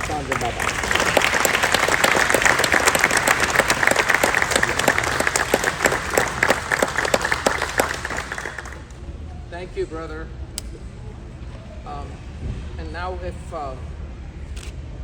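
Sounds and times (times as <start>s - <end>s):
audience applauding: 0.0s - 9.0s.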